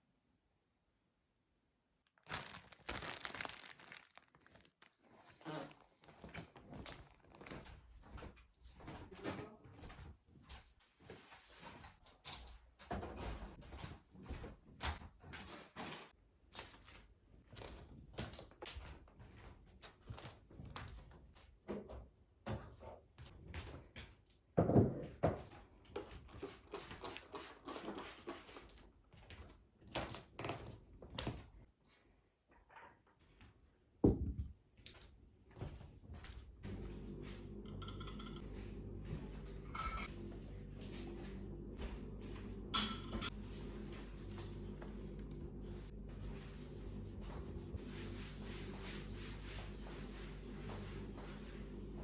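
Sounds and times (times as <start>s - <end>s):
steady low hum: 36.6s - 52.0s
objects knocking and clattering: 37.7s - 38.5s.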